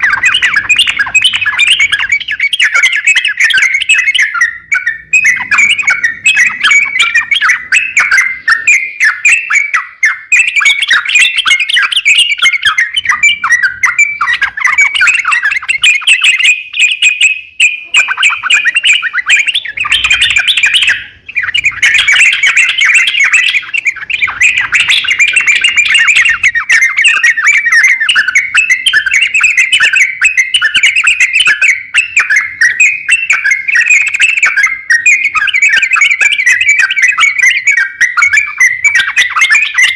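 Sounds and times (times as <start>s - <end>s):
songbird chattering song: 0.0s - 39.9s.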